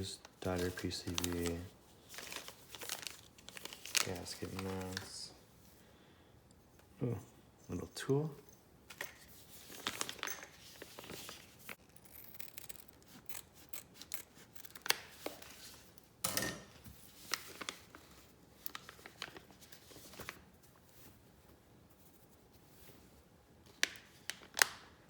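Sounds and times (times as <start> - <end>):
packaging clicks and rustles: 0.0 - 5.3, 8.9 - 15.9, 23.7 - 25.0.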